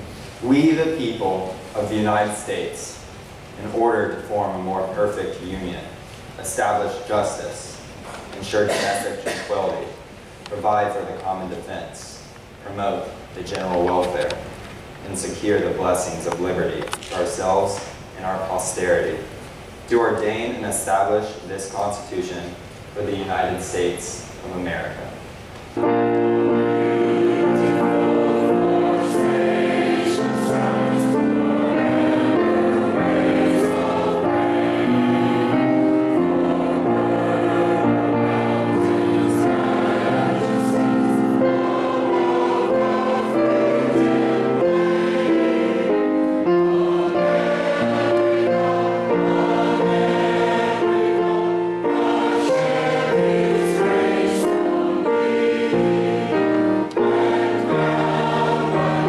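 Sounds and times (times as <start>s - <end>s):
choir singing with music: 8.4s - 9.6s, 25.8s - 59.0s.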